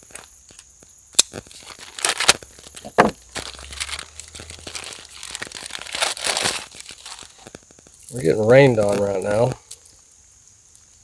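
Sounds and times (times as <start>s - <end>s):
plastic packaging crinkling and tearing: 1.2s - 9.6s.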